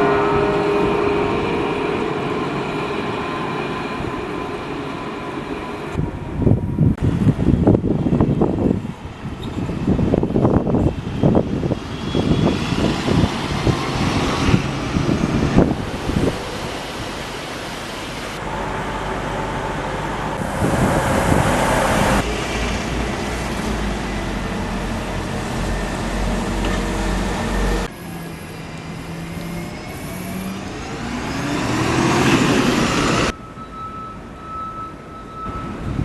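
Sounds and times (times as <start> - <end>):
rising whine of vehicle: 0.0 - 36.0
vehicle engine hum: 17.7 - 33.4.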